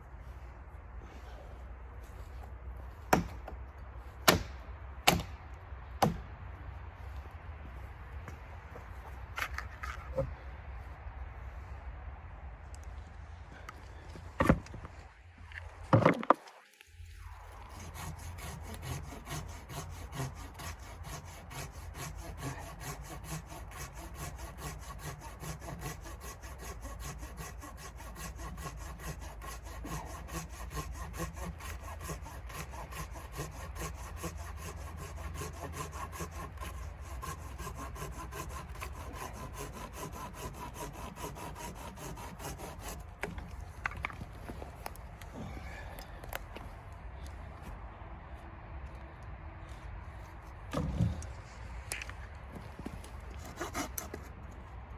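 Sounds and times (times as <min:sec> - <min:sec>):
dry rasping scrape: 0:17.2 - 0:45.5, 0:50.8 - 0:54.4.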